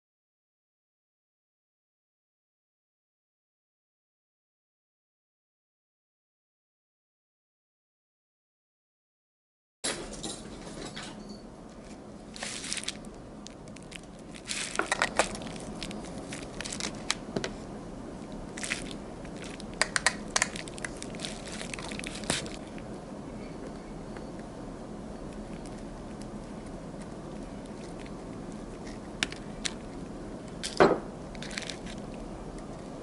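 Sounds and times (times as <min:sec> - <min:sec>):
faint steady hum: 0:09.9 - 0:33.0.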